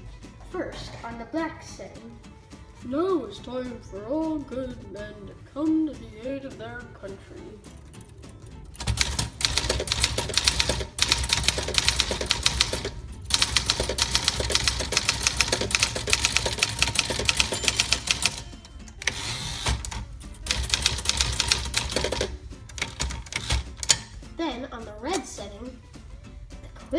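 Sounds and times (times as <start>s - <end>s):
manual typewriter typing: 8.8s - 24.1s.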